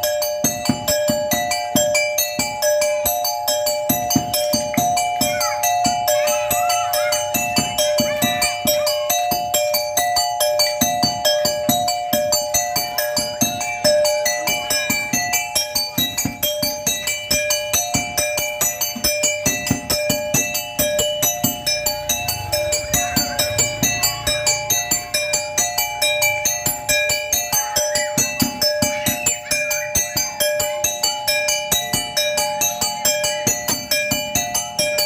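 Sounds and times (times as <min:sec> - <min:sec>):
struck metal notes over a beat: 0:00.0 - 0:35.0.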